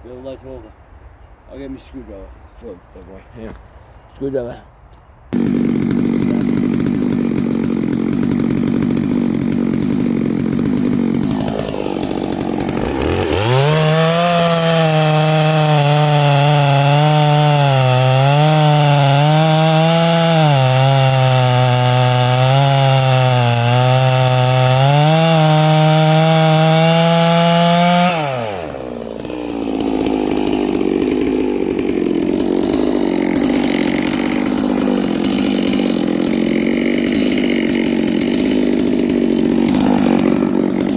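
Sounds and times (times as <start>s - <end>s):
chainsaw idling and revving: 5.3s - 40.9s.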